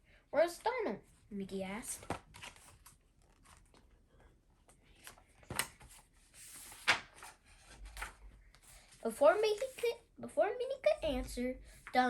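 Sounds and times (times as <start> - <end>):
book pages turning: 1.9 - 4.0, 4.7 - 9.8
paper rustle: 4.9 - 9.9.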